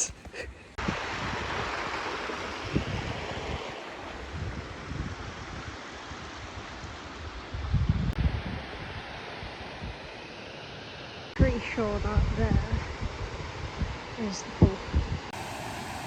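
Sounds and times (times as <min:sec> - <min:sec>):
wind gusts on microphone: 0:00.8 - 0:10.1, 0:11.4 - 0:16.0
waterfall rushing water: 0:15.4 - 0:16.0.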